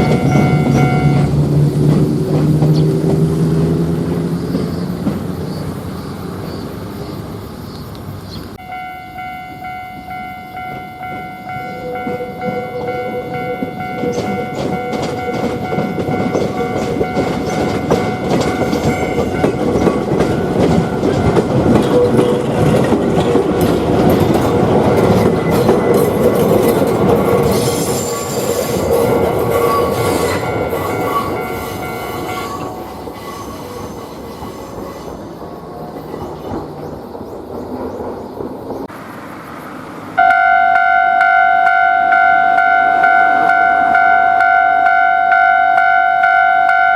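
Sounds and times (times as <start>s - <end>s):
level-crossing bell clanging: 0.0s - 1.6s, 8.6s - 34.8s, 40.2s - 46.9s
train wheel rumble: 0.0s - 46.9s.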